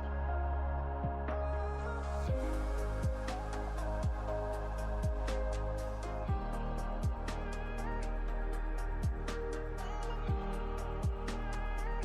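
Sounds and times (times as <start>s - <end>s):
electronic music: 0.0s - 12.0s
kick drum hits: 10.3s - 11.2s.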